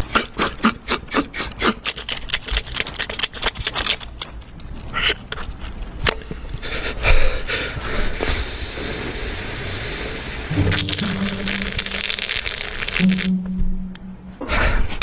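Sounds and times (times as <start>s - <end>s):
beatboxed clicks and scrapes: 0.0s - 6.9s, 7.7s - 13.3s
steady hiss: 7.6s - 13.3s.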